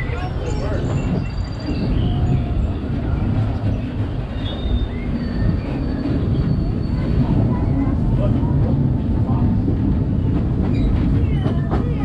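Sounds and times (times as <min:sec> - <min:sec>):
train cars rumbling on rails: 0:00.0 - 0:12.0.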